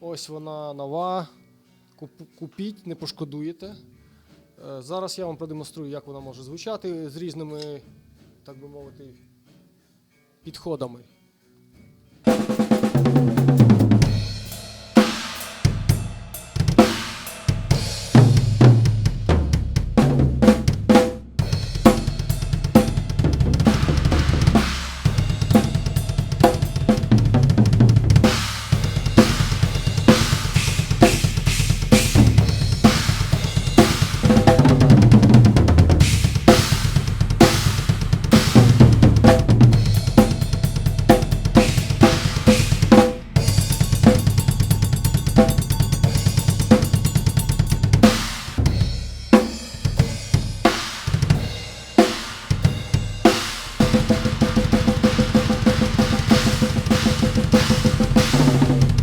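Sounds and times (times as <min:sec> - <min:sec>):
bass drum and snare beat: 0:12.3 - 0:59.0
cymbal hits ringing: 0:39.8 - 0:50.9.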